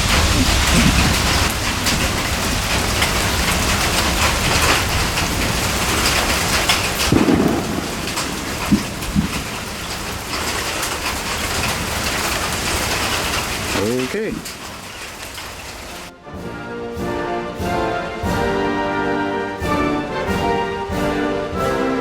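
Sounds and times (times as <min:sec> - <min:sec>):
rain pattering on surfaces: 0:00.0 - 0:16.1.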